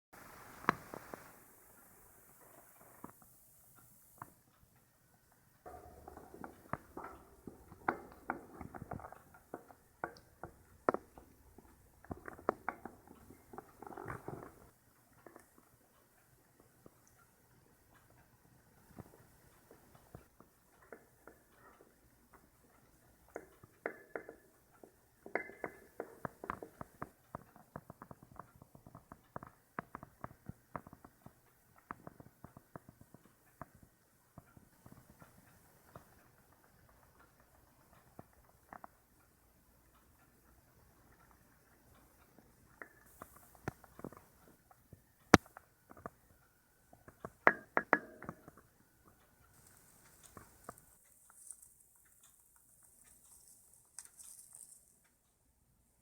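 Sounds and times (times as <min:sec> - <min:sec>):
small irregular clicks and scuffles: 0:00.2 - 0:56.0
rats scratching and rustling: 0:49.6 - 0:55.2.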